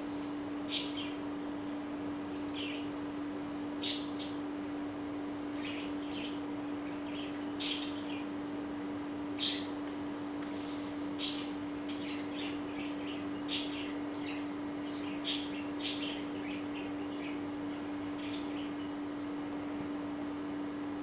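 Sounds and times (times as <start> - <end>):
steady low hum: 0.0 - 21.0
high chirping animal calls: 5.6 - 8.3.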